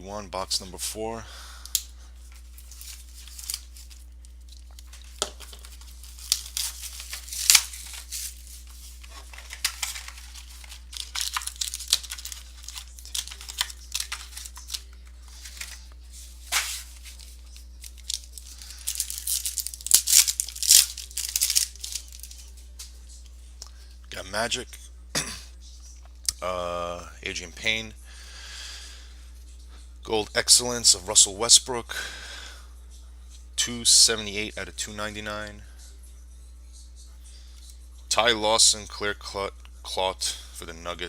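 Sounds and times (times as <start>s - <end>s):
plastic wrapping tearing and crinkling: 2.5s - 15.8s, 16.4s - 22.5s.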